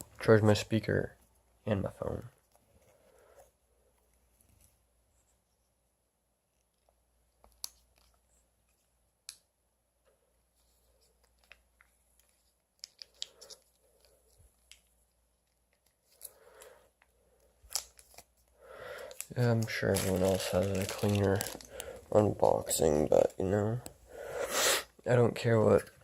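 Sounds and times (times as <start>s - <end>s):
packaging being opened and handled: 10.7s - 24.0s.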